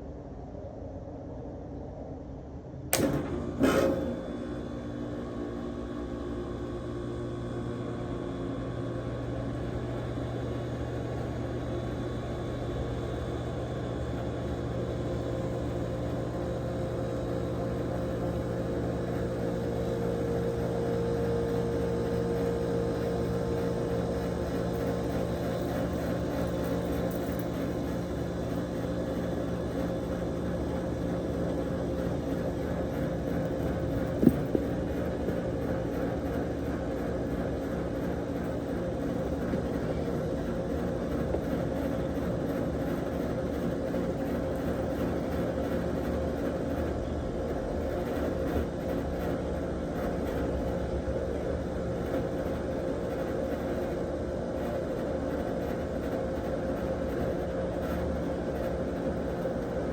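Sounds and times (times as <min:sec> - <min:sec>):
steady machine hum: 0:00.0 - 0:59.9.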